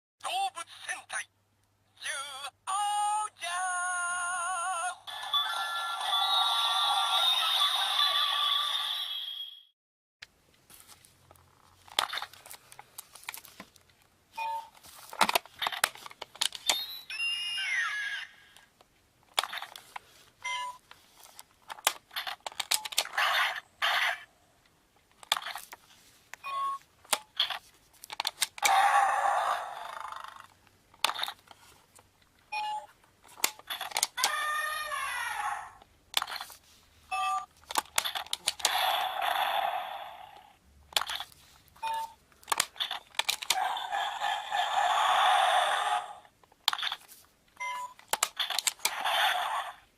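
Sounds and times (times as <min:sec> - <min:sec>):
recorded animal sound effects: 0:28.6 - 0:30.6, 0:38.7 - 0:40.6, 0:43.5 - 0:46.3.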